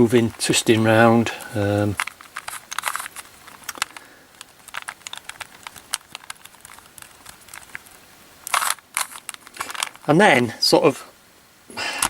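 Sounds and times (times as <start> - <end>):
puzzle cube plastic clicks: 1.4 - 10.1.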